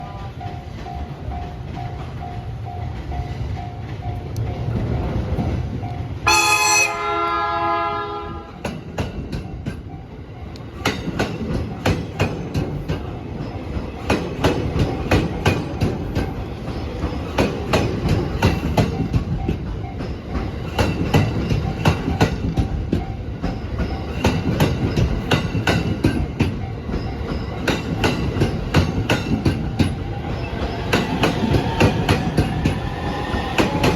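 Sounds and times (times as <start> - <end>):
train rumble: 0.0 - 33.9
train horn: 6.2 - 8.6
train wheels clacking over rail joints: 8.5 - 33.9
level crossing warning bell: 21.2 - 32.8.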